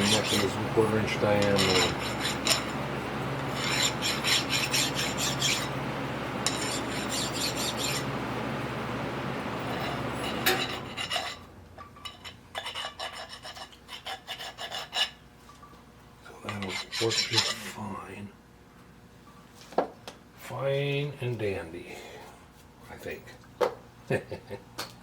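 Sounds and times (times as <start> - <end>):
rasping metal cutting: 0.0 - 2.8, 3.4 - 5.8, 6.4 - 8.2, 9.7 - 11.5, 12.6 - 15.2, 16.4 - 17.7.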